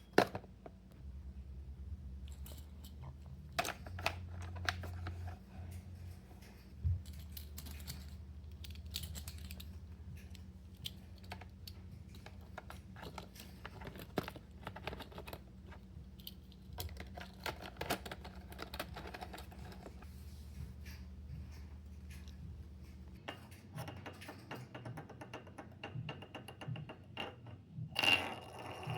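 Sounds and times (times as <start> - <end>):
steady low hum: 0.0 - 24.6
plastic toys clicking: 7.1 - 20.0.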